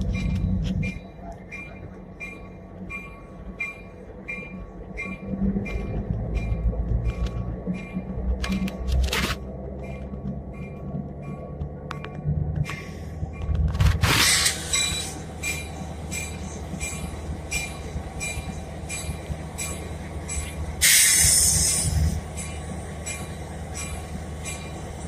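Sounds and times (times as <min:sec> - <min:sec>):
rhythmic track clicks: 0:00.0 - 0:14.0
train rumbling: 0:00.0 - 0:25.0.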